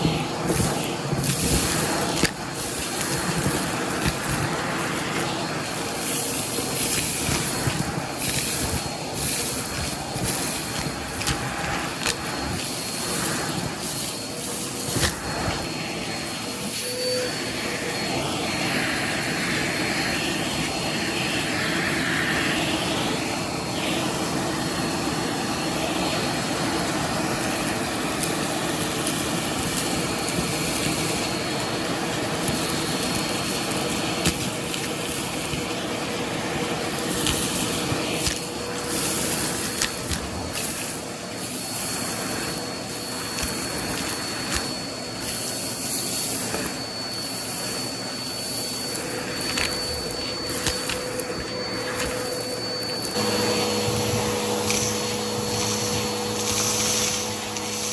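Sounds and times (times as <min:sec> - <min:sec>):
dusting brush on surface: 0:00.0 - 0:16.8, 0:28.6 - 0:57.9
vacuum cleaner motor whine: 0:00.0 - 0:57.9.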